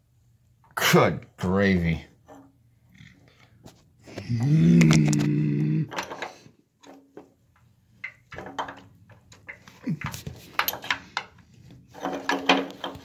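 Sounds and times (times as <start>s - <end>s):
metal tools clicking and clinking: 5.9s - 13.0s.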